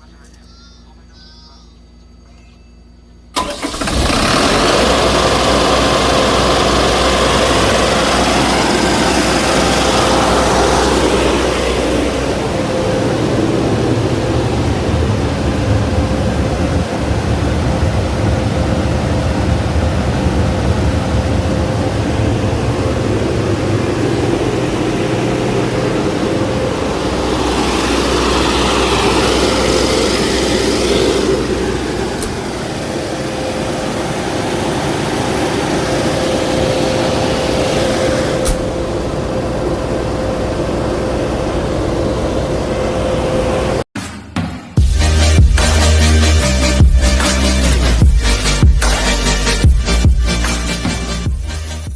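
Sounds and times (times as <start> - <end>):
generator engine running: 3.1 - 43.9, 44.8 - 51.9.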